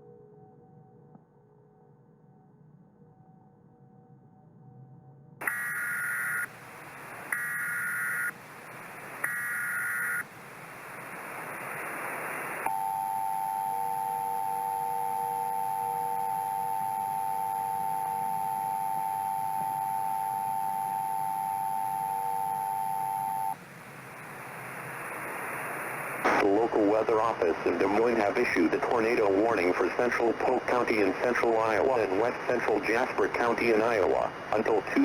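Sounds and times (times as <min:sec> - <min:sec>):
hiss of static: 0:05.4 - 0:18.2, 0:21.9 - 0:35.0
two-tone attention signal: 0:12.7 - 0:23.6
warbling data tones: 0:12.7 - 0:23.6.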